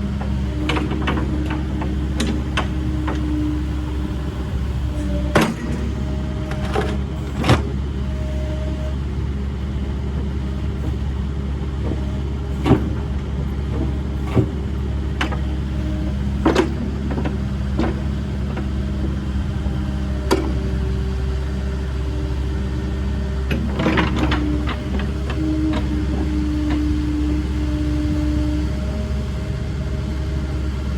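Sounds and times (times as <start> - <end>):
excavator diesel engine running: 0.0 - 30.9
sharp clunks and knocks: 0.2 - 3.4, 4.9 - 7.8, 11.8 - 19.2, 20.3 - 20.7, 23.5 - 27.1.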